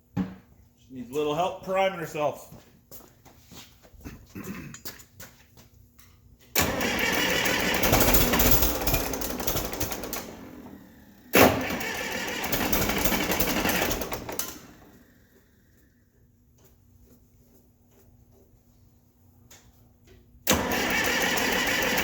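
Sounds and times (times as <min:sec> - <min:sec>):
diesel engine cranking: 0:06.6 - 0:15.8, 0:20.5 - 0:22.0.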